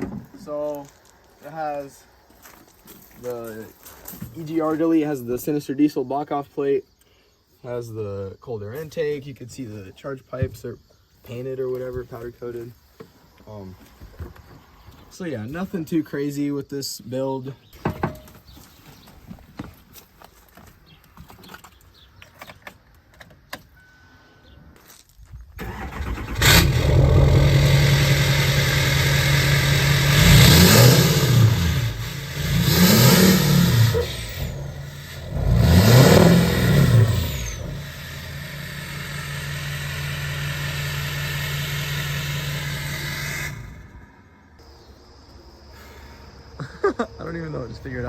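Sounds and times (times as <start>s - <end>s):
diesel engine starting and revving: 25.6s - 44.6s.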